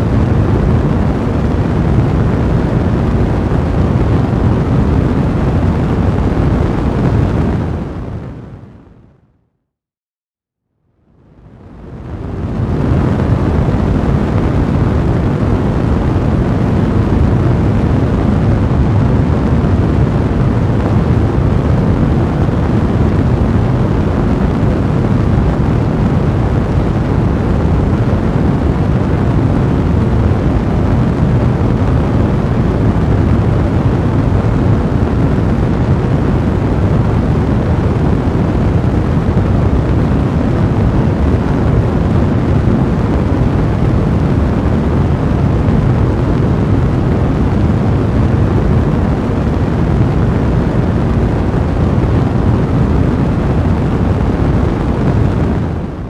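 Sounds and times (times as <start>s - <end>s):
fire burning in fireplace: 11.6s - 56.0s.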